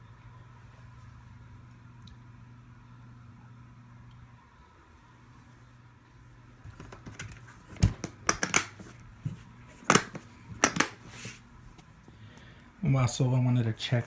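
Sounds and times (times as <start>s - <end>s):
guitar case clicks and knocks: 6.8s - 8.8s, 9.9s - 11.0s.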